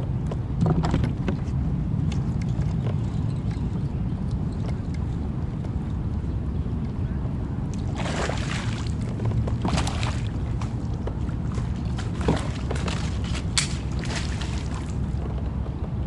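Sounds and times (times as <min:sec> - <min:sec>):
water splashing against boat: 0:07.7 - 0:16.0.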